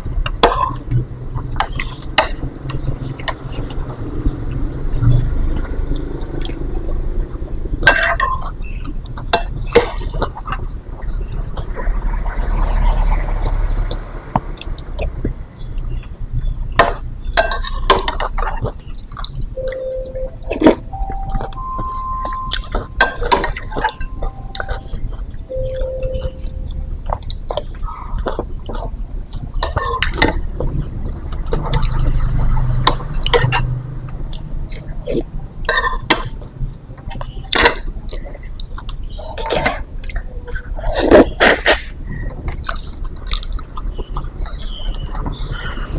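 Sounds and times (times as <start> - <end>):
spoon and broth noises: 5.6 - 15.3, 16.7 - 45.9
steady low hum: 14.1 - 45.2
wet chewing: 17.3 - 26.4, 27.0 - 45.8.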